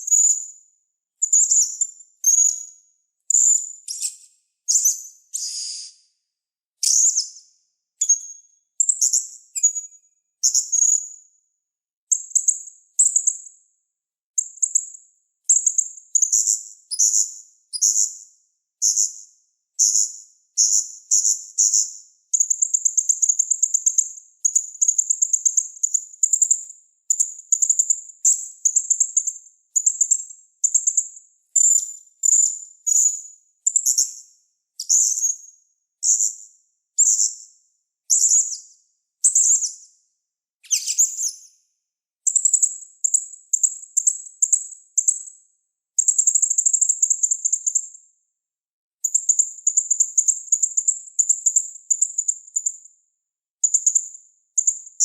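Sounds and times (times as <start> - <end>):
songbird chirping: 0.0 - 0.5, 1.2 - 6.1, 6.8 - 11.0, 40.6 - 41.6.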